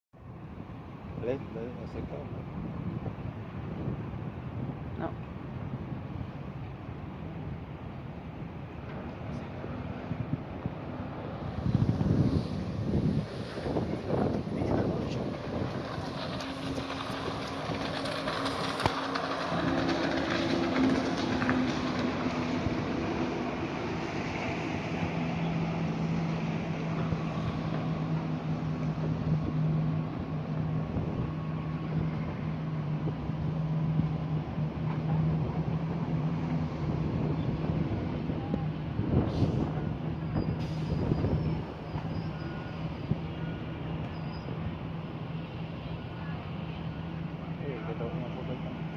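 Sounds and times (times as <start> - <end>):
rushing noise: 2.4 - 48.9
jet ski engine running: 13.7 - 21.6.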